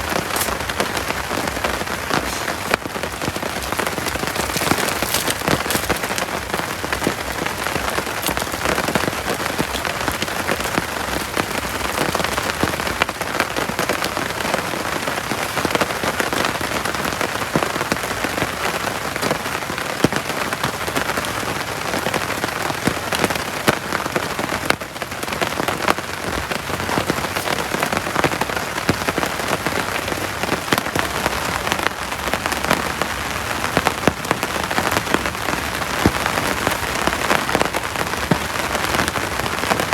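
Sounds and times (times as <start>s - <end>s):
heavy rain falling: 0.0s - 39.9s.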